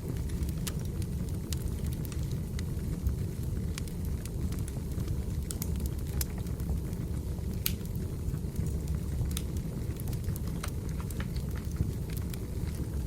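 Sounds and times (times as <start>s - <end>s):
wood fire crackling: 0.0s - 13.0s.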